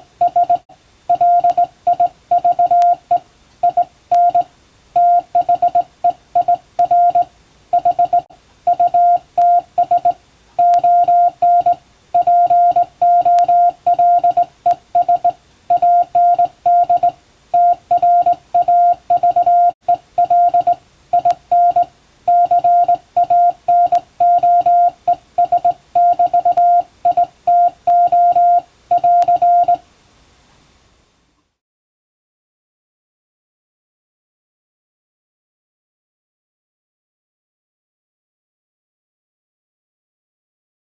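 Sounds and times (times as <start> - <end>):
morse code beeps: 0.2 - 29.8.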